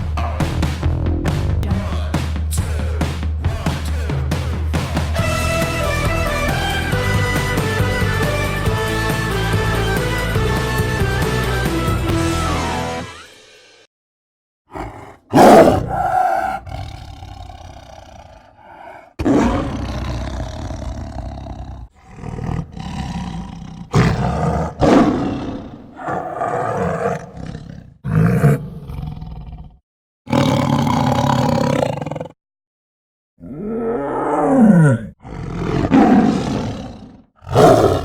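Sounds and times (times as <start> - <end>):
tiger roaring and growling: 14.7 - 32.4, 33.4 - 38.0.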